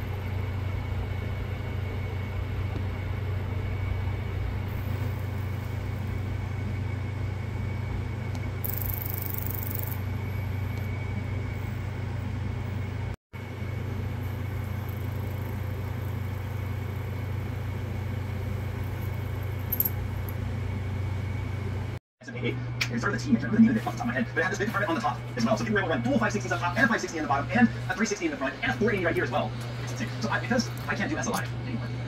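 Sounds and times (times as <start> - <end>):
thin high whine: 0.0 - 21.7
low machine hum: 0.0 - 32.0.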